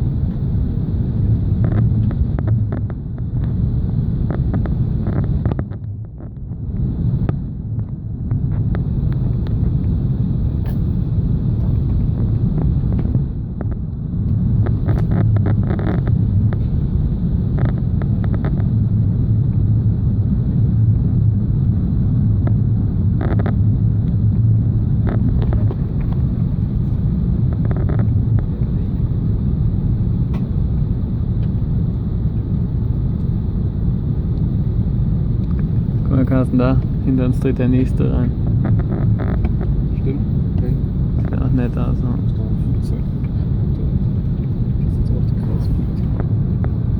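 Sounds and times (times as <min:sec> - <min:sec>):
airplane cabin rumble: 0:00.0 - 0:46.9
rattles and clicks of cabin fittings: 0:01.5 - 0:03.6, 0:04.2 - 0:18.8, 0:22.4 - 0:24.4, 0:25.0 - 0:29.1, 0:30.2 - 0:33.3, 0:35.4 - 0:46.9.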